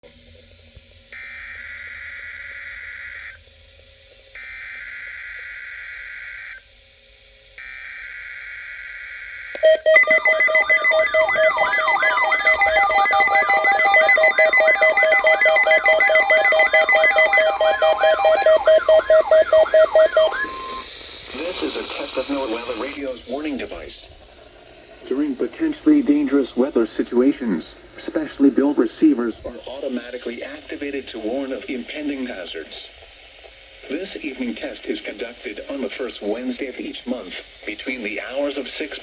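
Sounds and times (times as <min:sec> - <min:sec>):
digital header bursts: 0:09.6 - 0:23.2
warbling pulsing alarm: 0:09.6 - 0:23.4
steady warning alarm tone: 0:09.6 - 0:23.6.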